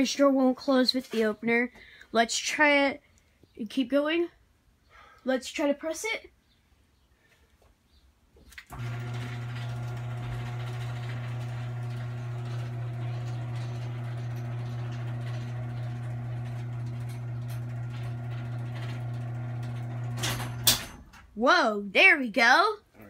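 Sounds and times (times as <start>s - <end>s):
garage door opener motor humming: 8.6s - 21.2s.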